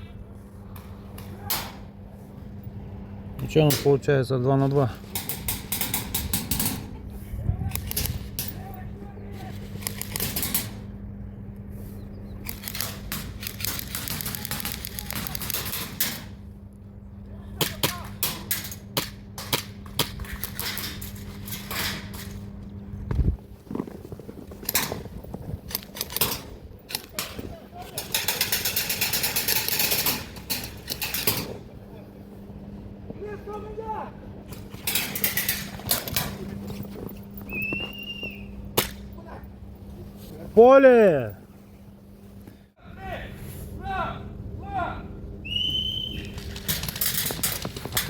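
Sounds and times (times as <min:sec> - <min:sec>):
airsoft guns firing: 0:12.5 - 0:16.3.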